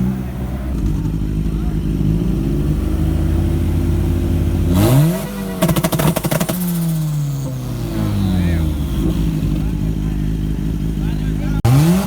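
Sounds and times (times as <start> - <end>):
car engine revving: 0.0 - 12.0
exhaust popping crackle: 0.0 - 12.0.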